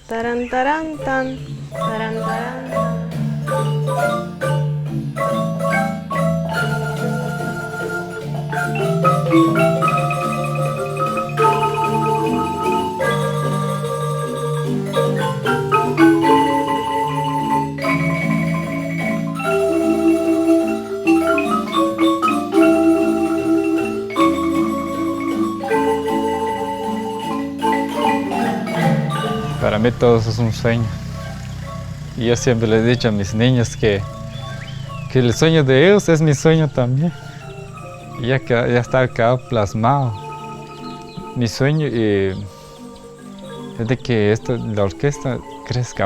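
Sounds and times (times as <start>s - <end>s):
marimba ensemble playing: 1.0s - 46.0s.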